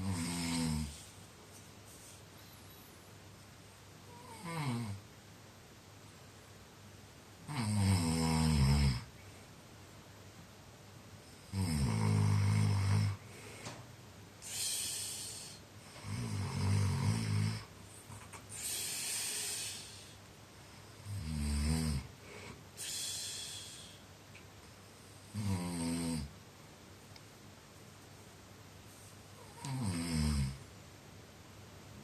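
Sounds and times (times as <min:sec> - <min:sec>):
heavy snoring: 0:00.0 - 0:01.1, 0:04.1 - 0:05.0, 0:07.5 - 0:09.1, 0:11.4 - 0:13.3, 0:14.4 - 0:17.7, 0:21.0 - 0:24.0, 0:25.2 - 0:26.3, 0:29.4 - 0:30.6
hissing breath: 0:14.4 - 0:15.6, 0:18.5 - 0:20.2, 0:22.2 - 0:24.1.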